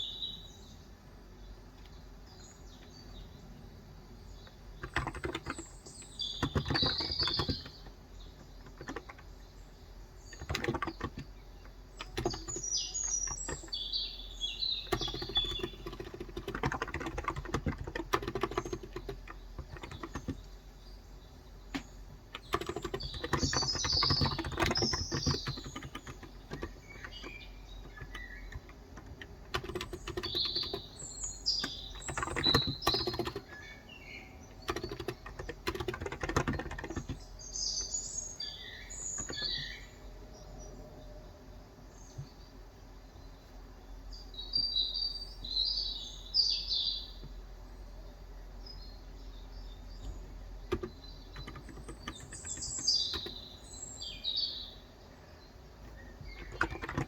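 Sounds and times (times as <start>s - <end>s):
small birds chirping: 0.0s - 57.0s
typing on a keyboard: 4.4s - 9.5s, 10.2s - 14.0s, 14.8s - 20.6s, 21.7s - 33.8s, 34.4s - 39.8s, 50.0s - 53.6s, 55.8s - 57.0s.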